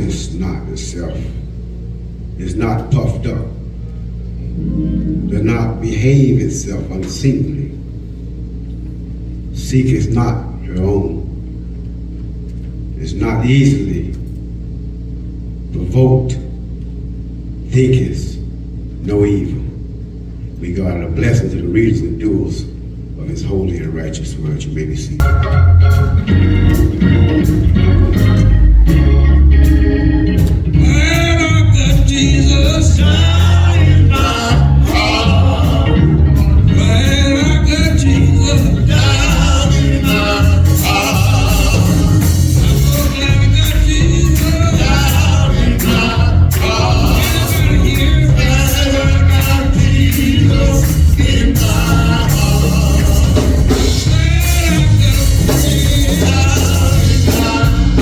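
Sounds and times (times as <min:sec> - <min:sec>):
bass: 0:00.0 - 0:58.0
organ: 0:00.0 - 0:58.0
gospel singing: 0:04.5 - 0:07.9, 0:20.6 - 0:58.0
drums: 0:25.2 - 0:58.0.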